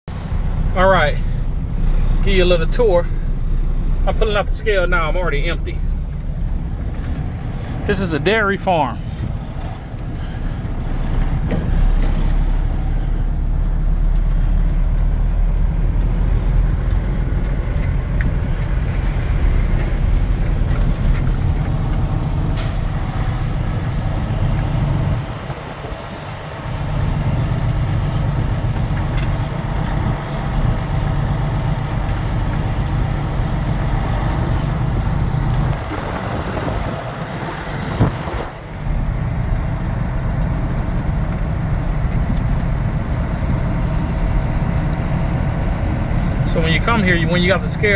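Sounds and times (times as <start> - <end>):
truck diesel engine running: 0.1 - 47.9.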